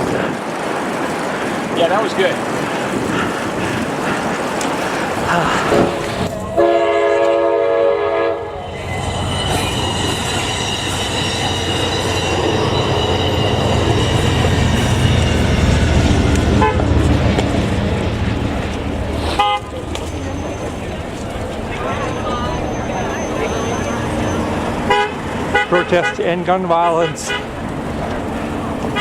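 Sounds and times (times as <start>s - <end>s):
train rumbling past: 0.0s - 29.0s
train horn blaring: 5.8s - 17.1s, 19.2s - 20.6s, 22.0s - 27.6s.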